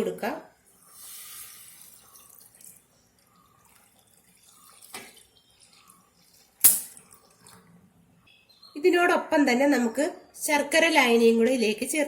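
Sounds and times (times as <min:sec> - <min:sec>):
faint drips: 0:00.7 - 0:08.3
milk pouring into a pan: 0:00.9 - 0:07.7.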